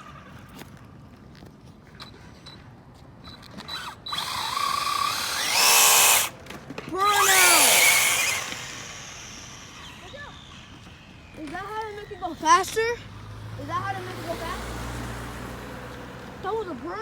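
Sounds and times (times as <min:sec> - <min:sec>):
wheels spinning on pavement: 0:03.2 - 0:17.0
electric motor whining: 0:03.7 - 0:06.4, 0:07.0 - 0:12.5.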